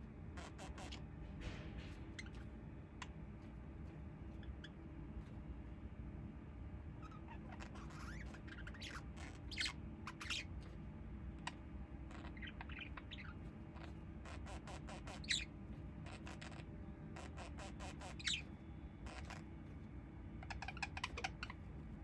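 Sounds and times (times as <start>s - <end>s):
steady low hum: 0.0s - 22.0s
small bird chirping and squeaking: 0.4s - 1.1s, 2.0s - 3.2s, 4.3s - 4.9s, 6.9s - 19.6s, 20.3s - 22.0s.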